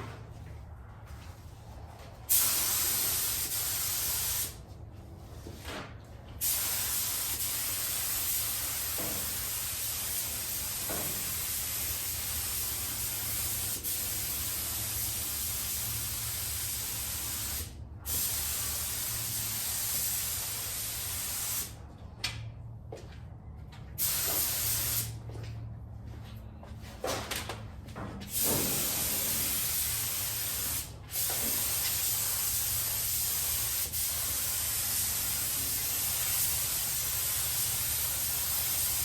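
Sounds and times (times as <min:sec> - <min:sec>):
spray gun hissing: 0:02.3 - 0:04.6, 0:06.4 - 0:21.8, 0:24.0 - 0:25.1, 0:28.3 - 0:39.0.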